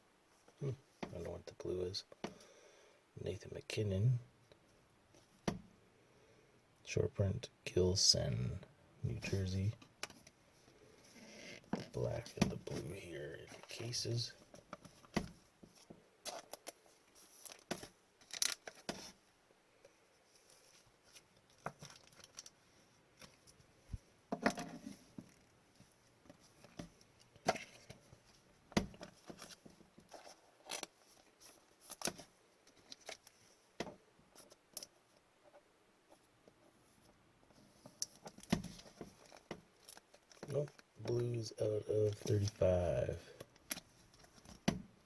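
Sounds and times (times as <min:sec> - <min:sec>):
packaging rustling: 0:16.3 - 0:18.9, 0:20.4 - 0:22.6.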